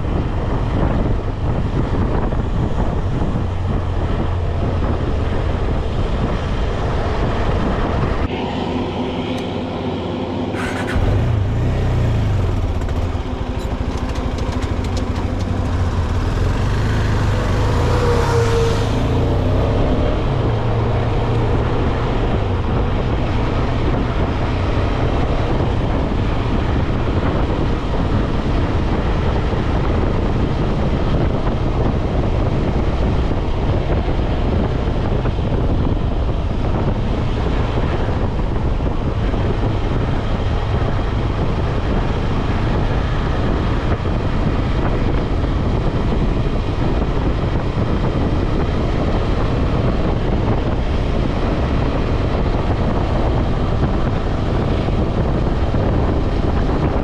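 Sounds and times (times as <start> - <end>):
motorcycle engine running: 0.0 - 57.0
wind rushing over microphone: 0.0 - 57.0.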